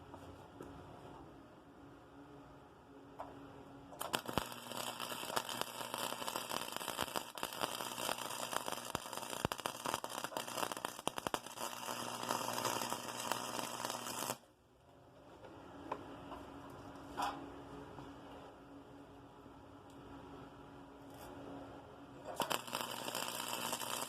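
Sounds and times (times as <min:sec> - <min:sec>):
low electrical hum: 0:00.0 - 0:24.0
welding arc crackling and sputtering: 0:04.0 - 0:14.4, 0:22.3 - 0:24.0.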